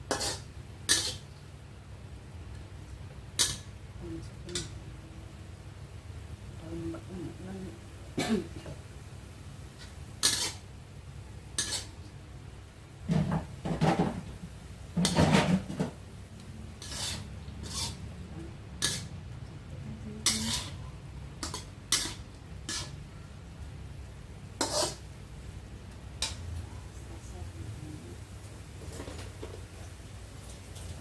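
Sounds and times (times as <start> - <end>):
utensil scraping against a pan: 0.1 - 1.2, 3.4 - 3.7, 9.8 - 10.6, 11.6 - 12.0, 15.0 - 16.0, 16.8 - 18.1, 18.8 - 19.2, 20.2 - 23.0, 24.6 - 25.0.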